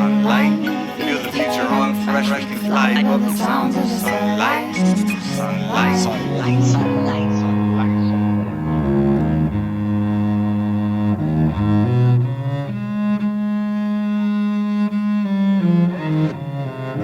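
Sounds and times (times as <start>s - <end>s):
bowed cello notes: 0.0s - 17.0s.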